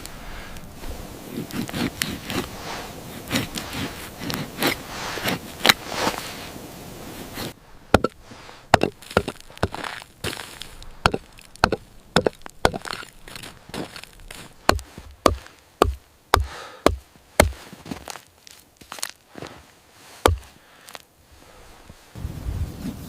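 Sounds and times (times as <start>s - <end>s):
sharp chopping impacts: 7.9s - 18.0s, 20.2s - 20.6s.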